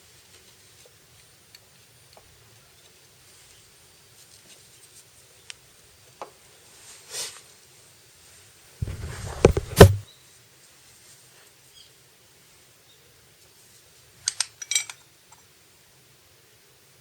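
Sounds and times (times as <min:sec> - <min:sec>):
rustle of handling: 0:02.8 - 0:05.2, 0:08.2 - 0:10.0, 0:10.6 - 0:11.6
sharp knocks: 0:08.8 - 0:10.0
soft brushing: 0:08.8 - 0:10.0.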